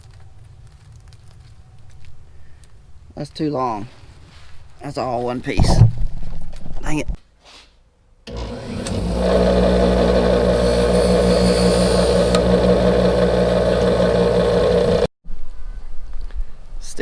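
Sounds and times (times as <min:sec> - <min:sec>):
tractor diesel engine droning: 0:08.3 - 0:15.1.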